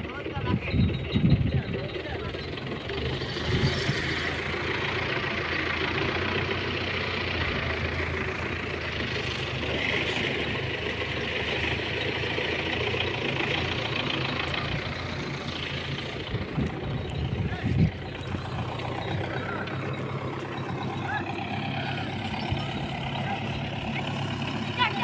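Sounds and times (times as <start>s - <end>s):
engine idling: 0.0s - 25.0s.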